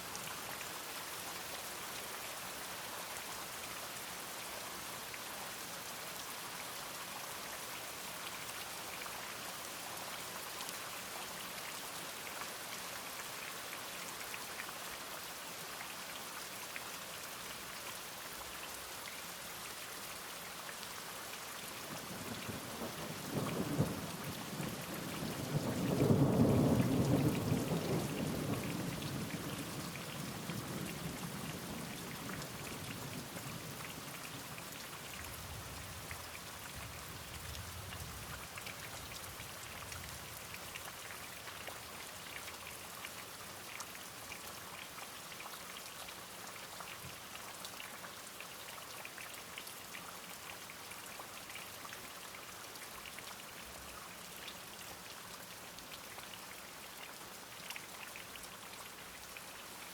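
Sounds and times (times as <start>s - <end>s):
steady rain drops: 0.0s - 59.9s
low rumble of thunder: 22.0s - 33.8s.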